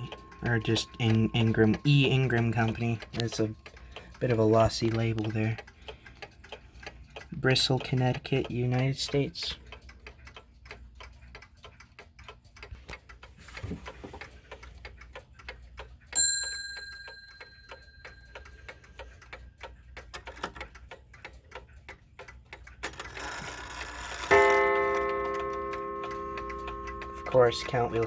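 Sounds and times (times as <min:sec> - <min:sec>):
clock bell strike: 0:00.0 - 0:03.5, 0:24.3 - 0:28.0
clock ticking: 0:00.0 - 0:28.0.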